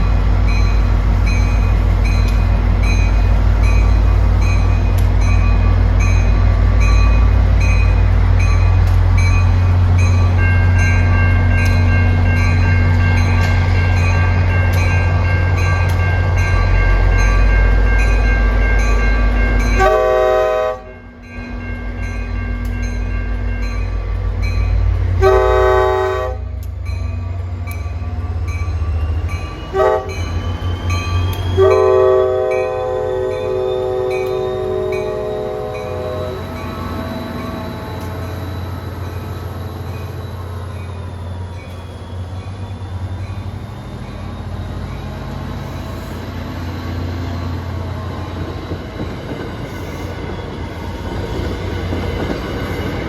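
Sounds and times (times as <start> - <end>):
diesel locomotive running: 0.0 - 53.0
train air horn blasts: 19.8 - 20.9, 25.2 - 26.6, 29.7 - 30.2, 31.6 - 36.4.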